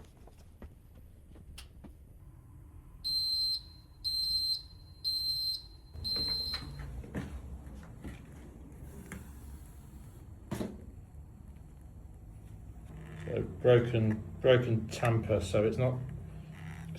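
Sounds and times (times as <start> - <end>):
smoke alarm high-pitched beeps: 3.0 - 6.8.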